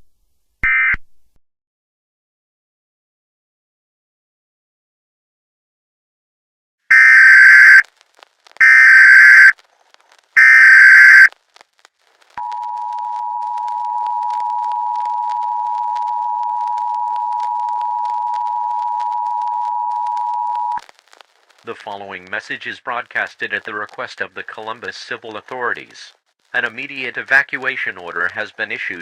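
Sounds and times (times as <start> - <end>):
screechy data bursts: 6.9 - 7.8, 8.6 - 9.6, 10.4 - 11.3.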